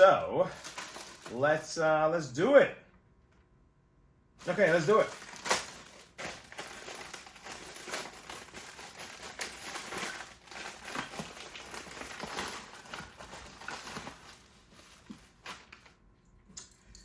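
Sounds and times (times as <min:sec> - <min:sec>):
plastic crinkling and rustling: 0:00.5 - 0:01.6, 0:04.4 - 0:16.0.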